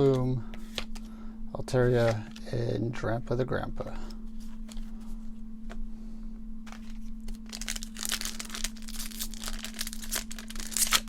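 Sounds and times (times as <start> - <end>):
foil wrapper crinkling and tearing: 6.7 - 11.0.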